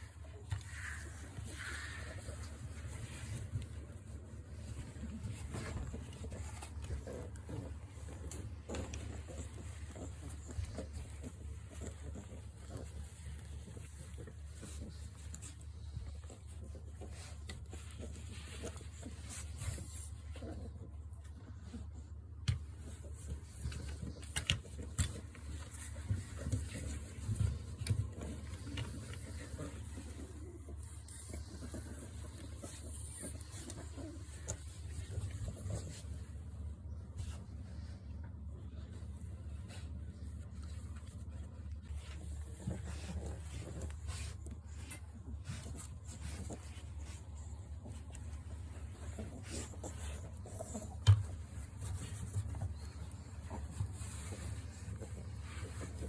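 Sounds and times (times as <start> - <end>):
puppy grunting and snuffling: 0.0 - 37.9, 39.7 - 56.0.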